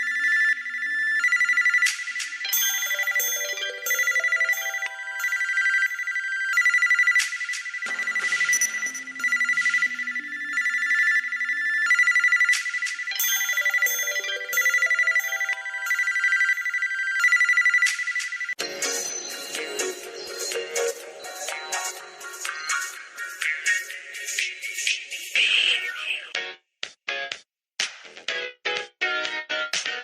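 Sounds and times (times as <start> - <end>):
phone ringtone melody: 0.0 - 24.7
different tune: 2.4 - 6.6, 7.8 - 16.7
pulsing high ringing tone: 2.6 - 12.6
lower electronic tune: 7.7 - 17.0.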